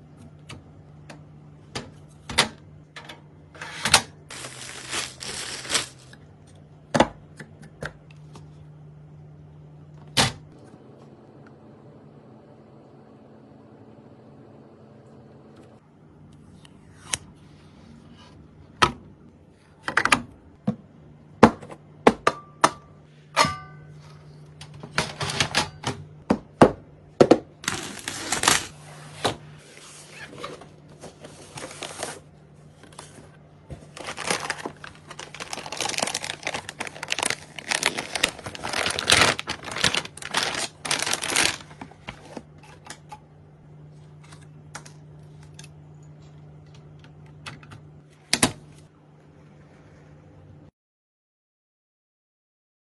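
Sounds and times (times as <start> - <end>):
faint steady hum: 0.0 - 50.7
rustling and scraping: 27.7 - 42.8.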